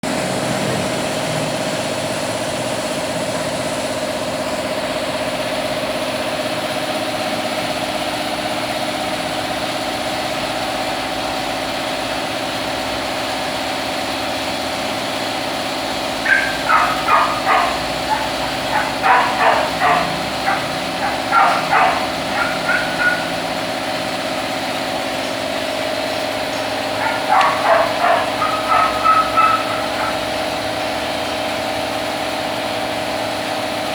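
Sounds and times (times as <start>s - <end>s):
steady mechanical hum: 0.0s - 33.9s
cat coughing and wheezing: 16.3s - 23.4s.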